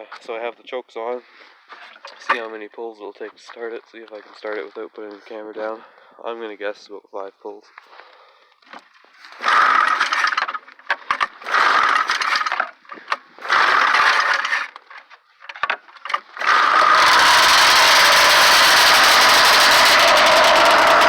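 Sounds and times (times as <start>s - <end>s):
recoil starter pulls: 9.3s - 21.0s
snowmobile engine running: 16.4s - 21.0s.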